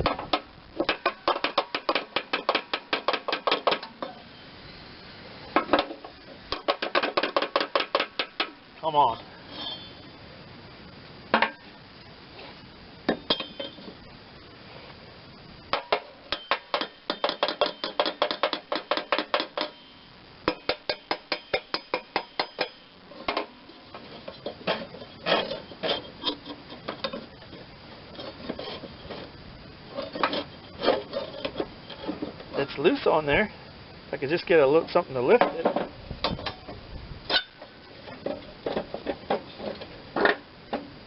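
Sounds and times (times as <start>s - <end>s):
hammer tapping on metal: 15.8s - 19.8s.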